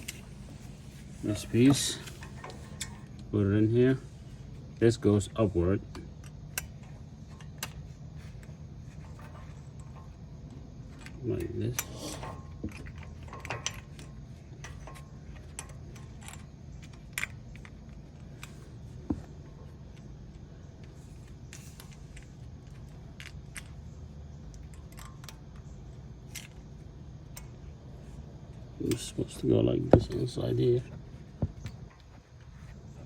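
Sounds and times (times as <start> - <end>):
metallic clicks of brake parts: 11.0 - 18.6, 24.5 - 26.6, 28.8 - 29.2.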